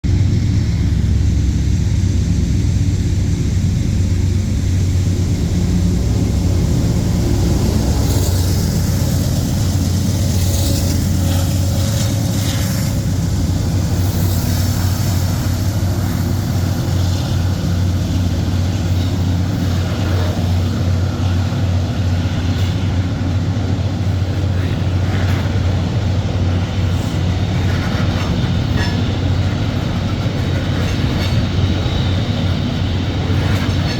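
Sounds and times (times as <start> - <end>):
diesel locomotive engine rumble: 0.0 - 33.9
metallic rail noises: 3.5 - 33.9.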